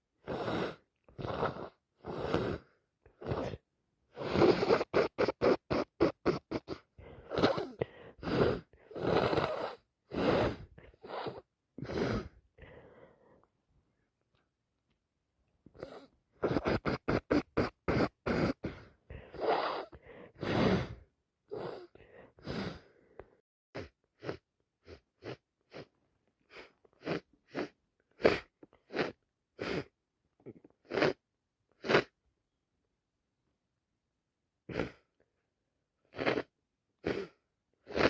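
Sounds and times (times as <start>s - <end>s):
person sniffing: 0.2s - 13.4s, 15.7s - 23.2s, 23.8s - 29.9s, 30.8s - 31.2s, 31.8s - 32.1s, 34.7s - 35.1s, 36.1s - 38.0s
person sneezing: 15.8s - 21.0s.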